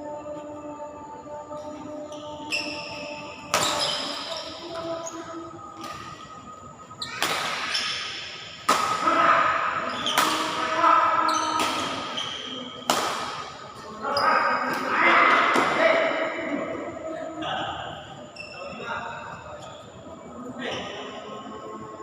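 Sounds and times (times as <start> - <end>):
voices: 0.0 - 22.0
racket hitting shuttlecock: 3.5 - 4.1, 7.1 - 9.1, 10.0 - 10.7, 11.5 - 12.2, 12.8 - 13.5.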